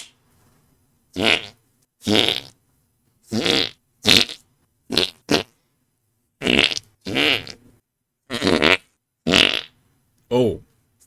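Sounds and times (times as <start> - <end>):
fart noises: 1.2 - 2.6, 3.3 - 5.6, 6.4 - 7.6, 8.3 - 9.8.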